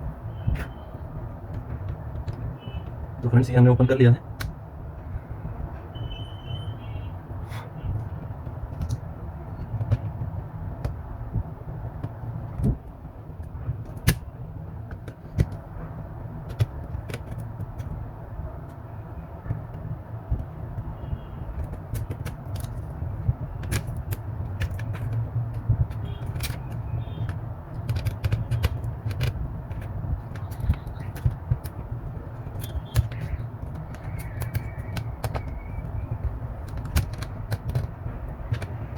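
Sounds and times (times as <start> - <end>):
clicks and taps of hand tools: 14.8 - 18.0, 21.6 - 35.9, 36.6 - 38.9.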